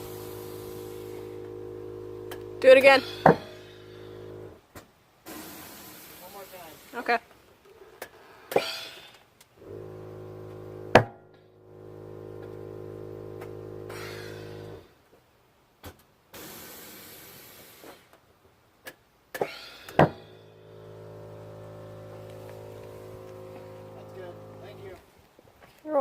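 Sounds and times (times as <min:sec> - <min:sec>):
air compressor humming: 0:00.0 - 0:04.6, 0:09.6 - 0:14.9, 0:19.9 - 0:25.0
air hissing: 0:00.0 - 0:04.6, 0:05.2 - 0:07.0, 0:11.7 - 0:14.8, 0:16.3 - 0:18.1, 0:19.4 - 0:25.0
knocks: 0:03.1 - 0:03.7, 0:19.4 - 0:20.3
suspension strut clunk: 0:12.1 - 0:14.8.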